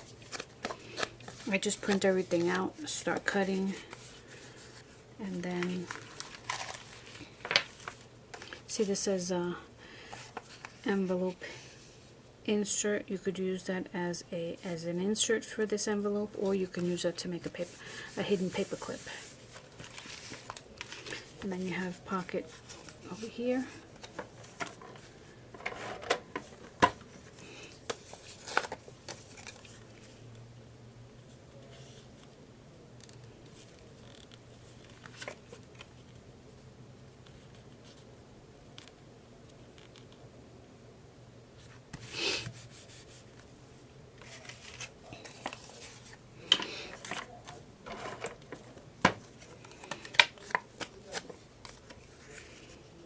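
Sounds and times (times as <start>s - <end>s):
paper rustling: 0.0s - 8.8s, 16.7s - 30.2s, 44.2s - 46.2s, 46.8s - 52.8s.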